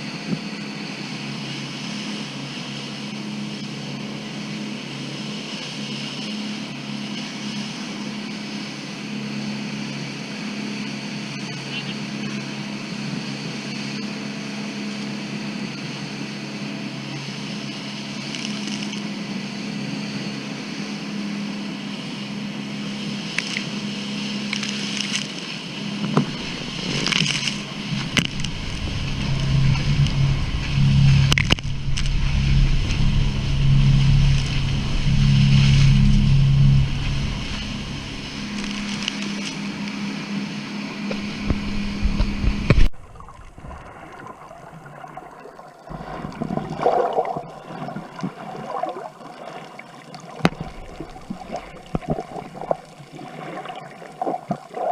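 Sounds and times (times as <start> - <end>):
boat engine humming: 0.0 - 54.9
rumbling water: 0.0 - 54.9
wind noise: 25.8 - 44.9, 50.4 - 54.9.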